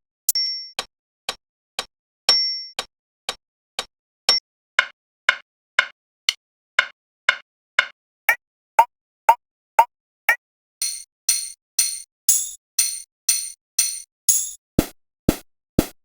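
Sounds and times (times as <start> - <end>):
metronome clicking: 10.8 - 14.6.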